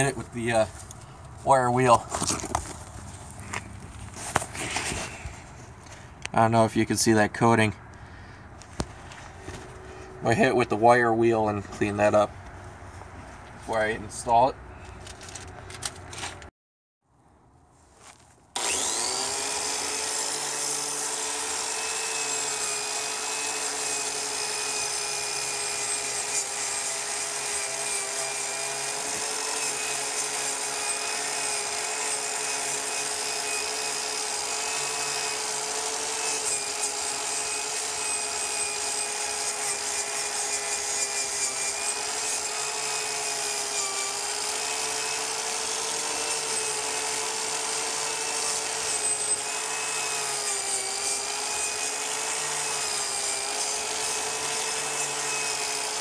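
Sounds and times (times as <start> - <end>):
angle grinder wire wheel whine: 18.6 - 56.0.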